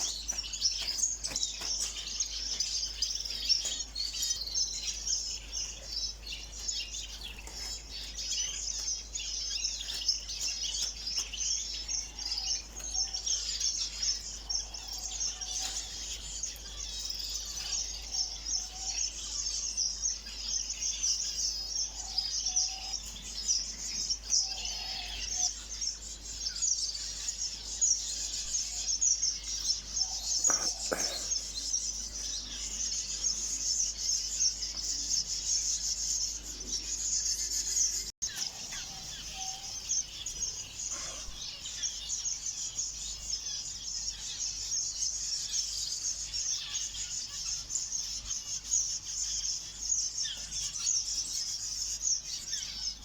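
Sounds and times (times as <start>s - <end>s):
lower bird calls: 0.0s - 5.9s, 24.1s - 42.9s
small birds chirping and twittering: 0.0s - 53.0s.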